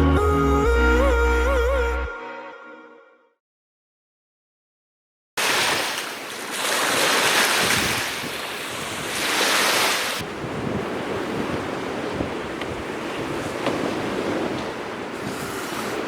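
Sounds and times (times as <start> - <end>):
gusting wind on microphone: 6.6 - 16.0.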